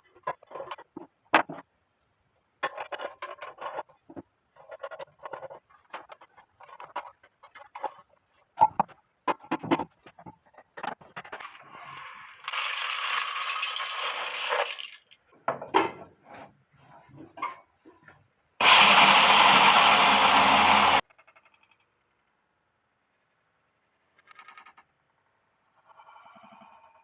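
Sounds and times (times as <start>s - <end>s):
angle grinder motor running: 18.6s - 21.0s.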